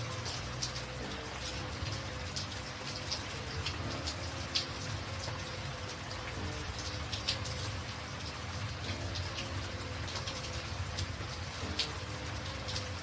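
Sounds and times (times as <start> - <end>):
rain drops ticking on surface: 0.0 - 13.0.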